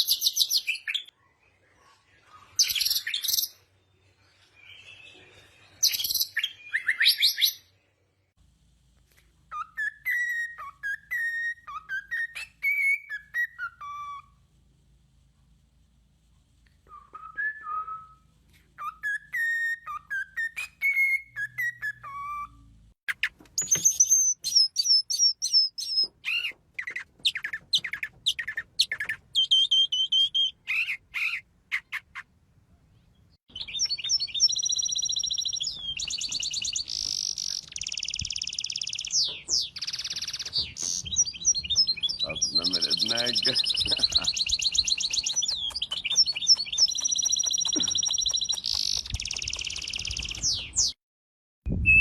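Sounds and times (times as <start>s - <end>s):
songbird singing: 18.8s - 32.2s, 32.8s - 51.0s.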